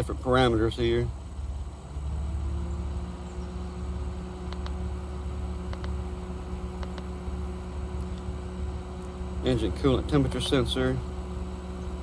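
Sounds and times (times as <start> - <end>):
car engine idling: 0.0 - 12.0
faint short clicks: 4.5 - 4.8, 5.7 - 6.0.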